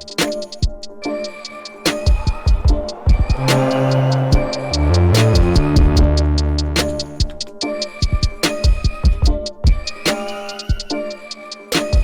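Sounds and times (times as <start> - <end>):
synth chords: 2.6 - 7.4.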